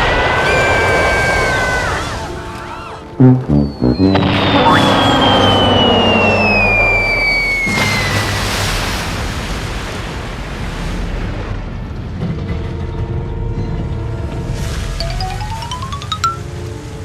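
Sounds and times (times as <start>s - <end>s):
falling whistle: 3.2s - 8.3s
rumbling explosion-like crash: 3.2s - 12.3s.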